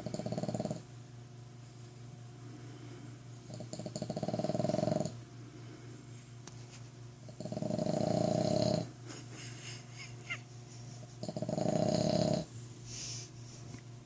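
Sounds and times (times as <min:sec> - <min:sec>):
dog snoring loudly: 0:00.0 - 0:00.8, 0:03.5 - 0:05.2, 0:07.3 - 0:08.9, 0:11.2 - 0:12.5.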